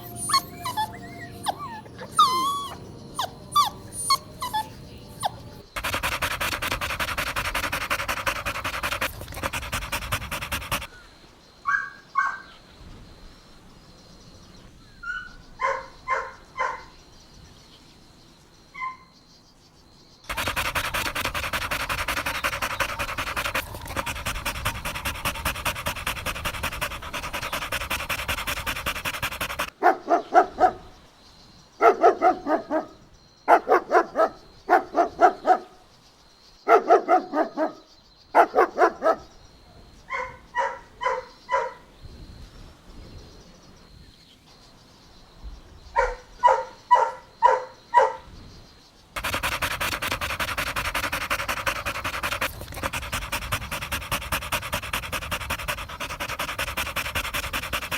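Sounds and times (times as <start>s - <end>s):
dog panting: 0.0s - 10.9s, 20.3s - 30.8s, 31.8s - 32.9s, 36.7s - 37.8s, 38.4s - 39.3s, 49.2s - 57.9s
dog barking: 11.7s - 12.5s, 15.6s - 16.9s, 20.3s - 30.9s, 31.8s - 35.8s, 36.7s - 39.3s, 40.1s - 41.8s, 46.0s - 48.3s
high yipping barks: 15.6s - 16.9s, 20.3s - 30.8s, 31.8s - 35.7s, 36.7s - 37.8s, 38.4s - 39.2s, 40.1s - 41.8s, 46.0s - 48.2s.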